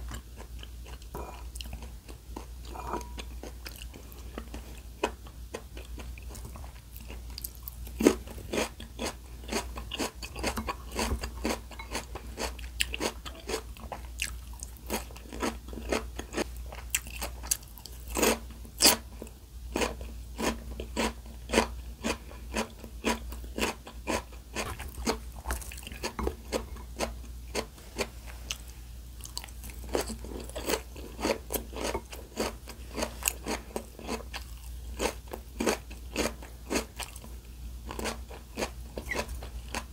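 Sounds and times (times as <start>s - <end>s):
crisp chewing crunches: 19.8s - 39.9s.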